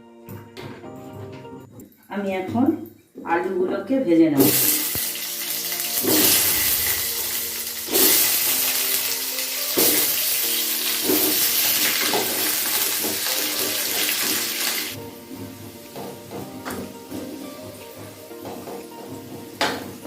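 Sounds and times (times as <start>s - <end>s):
potatoes sizzling in hot oil: 4.4s - 20.0s.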